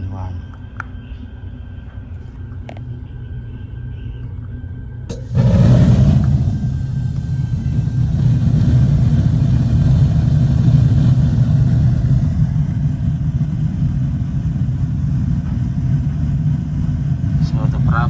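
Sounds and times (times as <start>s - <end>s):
gas burner flame roar: 5.1s - 18.0s.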